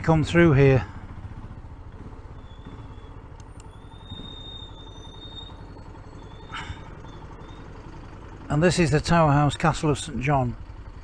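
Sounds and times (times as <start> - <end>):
motorcycle engine thrumming: 0.9 - 8.4
thin high whistle: 3.8 - 6.5.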